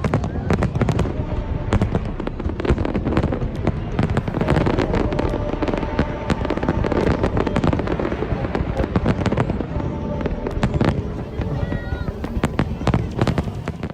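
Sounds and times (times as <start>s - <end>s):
fireworks bangs and crackling: 0.0s - 13.9s.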